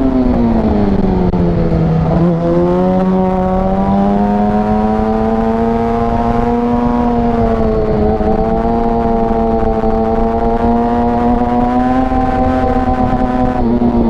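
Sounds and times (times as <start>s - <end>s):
motorcycle engine at high revs: 0.0s - 14.0s
wind rushing: 0.0s - 14.0s.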